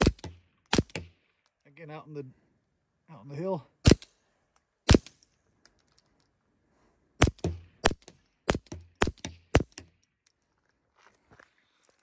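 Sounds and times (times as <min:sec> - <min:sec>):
suppressed pistol shots: 0:00.0 - 0:01.2, 0:03.8 - 0:04.2, 0:04.9 - 0:05.2, 0:07.2 - 0:09.9.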